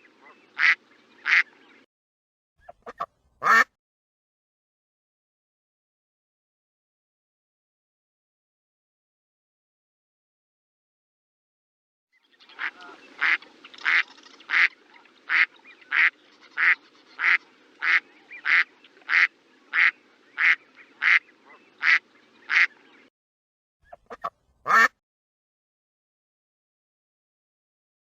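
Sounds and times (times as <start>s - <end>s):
duck quacking: 0.2s - 1.5s, 2.6s - 3.7s, 12.6s - 22.8s, 23.9s - 25.0s.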